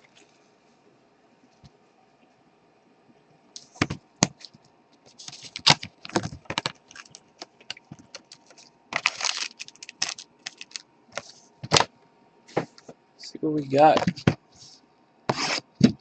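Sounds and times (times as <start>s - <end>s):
plastic wrap and cardboard tearing: 5.2s - 7.5s, 8.1s - 10.8s.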